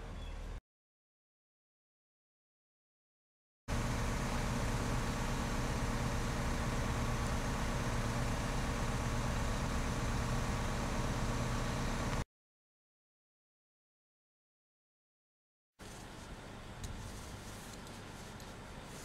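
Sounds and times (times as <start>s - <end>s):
low machine hum: 3.7s - 12.2s.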